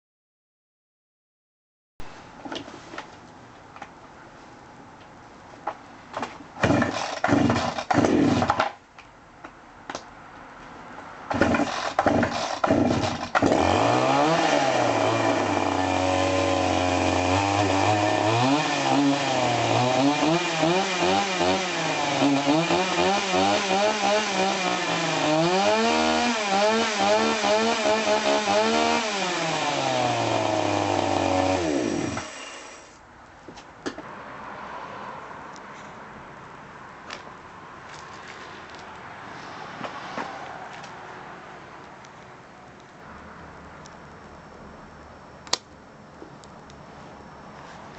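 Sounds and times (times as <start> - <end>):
chainsaw idling and revving: 6.6 - 8.7, 11.3 - 33.0
chainsaw pull-starting: 6.6 - 8.8, 11.3 - 33.0.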